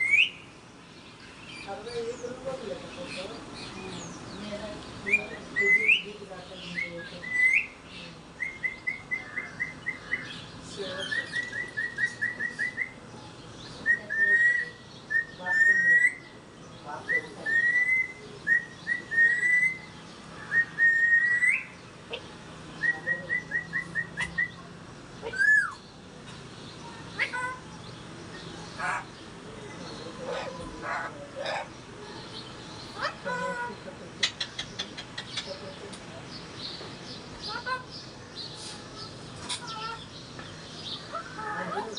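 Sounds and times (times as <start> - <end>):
parrot whistling: 20.5 - 21.7.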